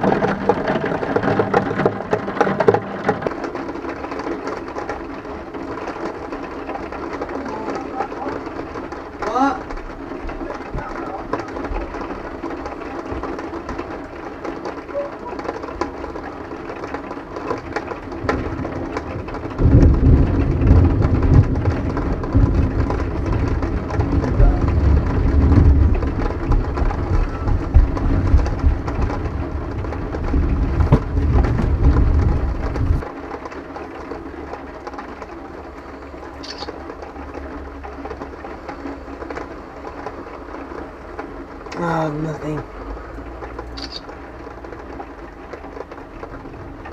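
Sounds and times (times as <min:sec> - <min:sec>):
low rumble of thunder: 0:00.0 - 0:33.2
rain hissing: 0:00.0 - 0:46.9.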